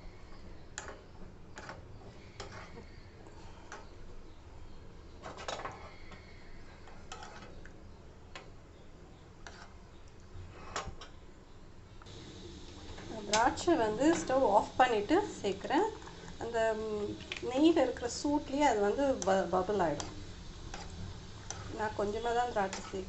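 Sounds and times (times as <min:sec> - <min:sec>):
nuts sizzling in a pan: 0:12.0 - 0:23.0.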